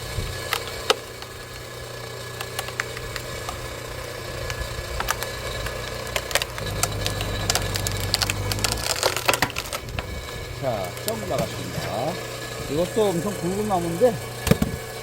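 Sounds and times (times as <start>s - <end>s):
log splitter engine hum: 6.0s - 9.7s.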